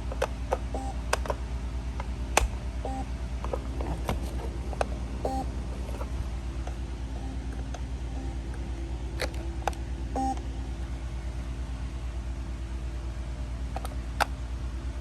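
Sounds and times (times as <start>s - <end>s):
steady low hum: 0.0s - 15.0s
smoke alarm low beeps: 2.8s - 3.1s, 5.2s - 5.5s, 7.1s - 8.5s, 10.1s - 10.4s.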